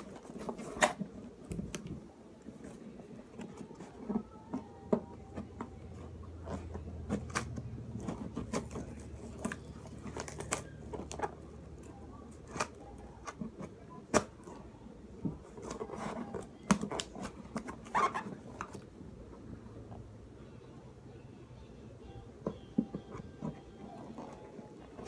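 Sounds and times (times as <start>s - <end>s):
packaging rustling and crinkling: 5.5s - 14.6s.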